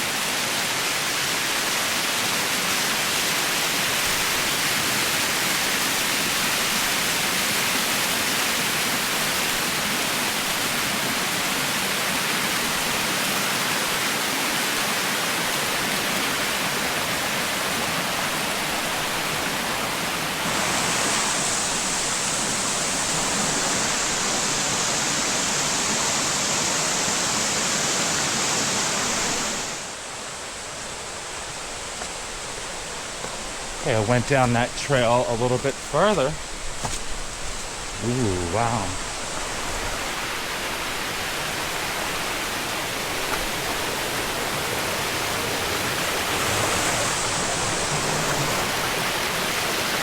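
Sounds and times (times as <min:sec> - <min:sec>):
waterfall rushing: 0:00.0 - 0:50.0.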